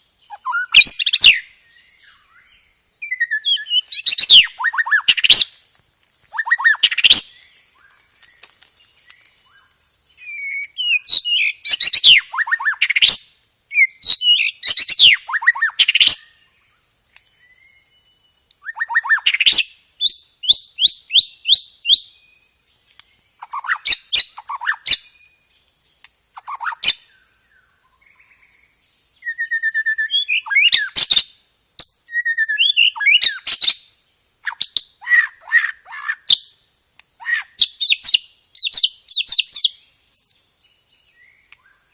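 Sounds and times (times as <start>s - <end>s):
bird singing with whistles: 0.0s - 5.5s, 6.3s - 8.0s, 9.5s - 16.5s, 17.2s - 22.8s, 29.2s - 33.8s, 37.2s - 40.4s
steady high hiss: 0.0s - 23.4s.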